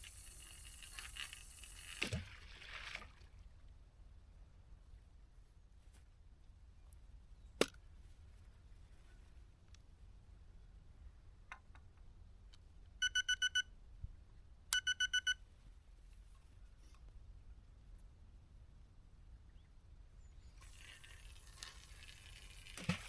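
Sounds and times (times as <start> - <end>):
faint hiss: 0.0 - 2.4
bite alarm high beeps: 13.0 - 13.7, 14.8 - 15.4.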